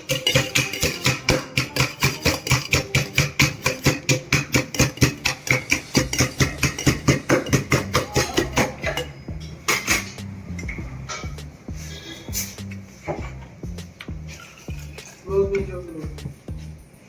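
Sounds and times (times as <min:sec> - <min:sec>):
rapid knocking of glassware: 0:00.0 - 0:10.1.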